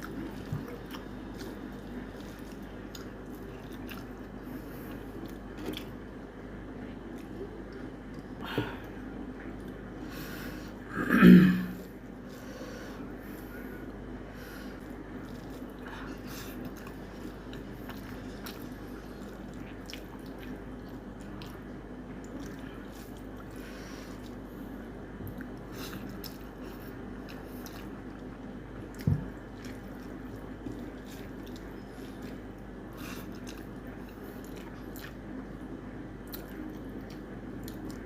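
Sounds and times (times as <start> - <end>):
wet chewing: 0.0 - 6.1, 15.1 - 24.5, 25.3 - 35.6, 36.2 - 38.0
steady low hum: 0.0 - 38.0.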